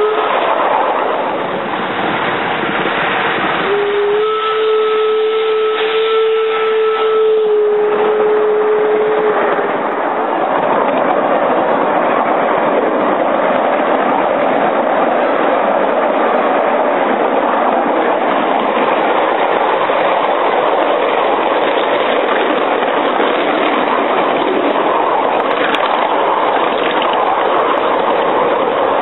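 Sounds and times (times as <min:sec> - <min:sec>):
miniature train rolling: 0:09.2 - 0:29.0.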